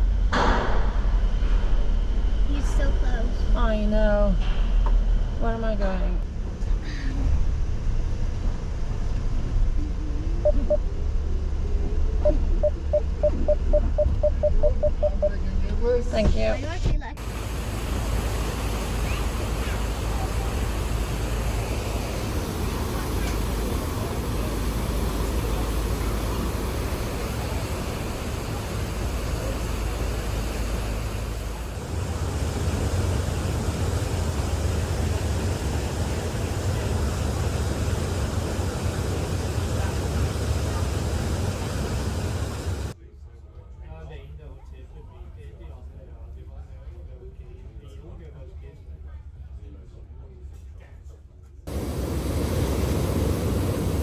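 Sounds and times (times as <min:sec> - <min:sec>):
low engine rumble in cabin: 0:00.0 - 0:43.3, 0:51.5 - 0:54.0
car parking sensor beeping: 0:10.4 - 0:10.8, 0:12.2 - 0:15.4
rushing noise: 0:17.2 - 0:43.0.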